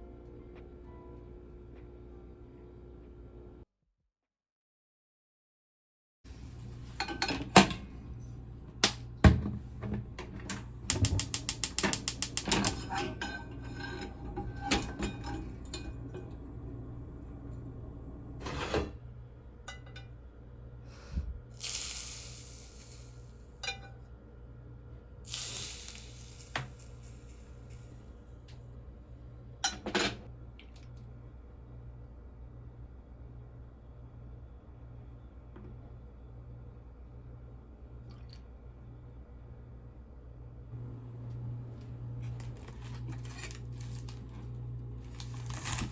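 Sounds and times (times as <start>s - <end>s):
steady low hum: 6.3s - 45.9s
utensils and dishes clinking: 7.0s - 7.8s, 10.9s - 16.3s, 23.6s - 24.0s.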